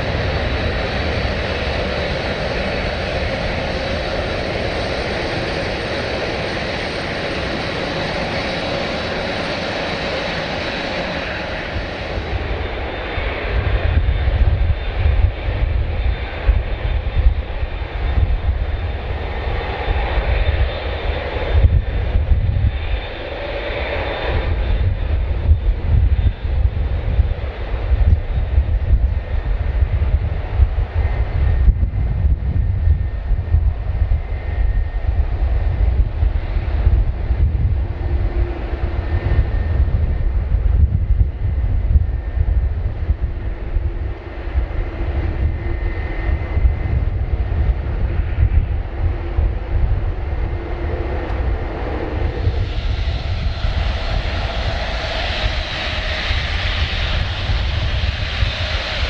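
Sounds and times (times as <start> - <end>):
jet engines rushing with whine: 0.0 - 59.0.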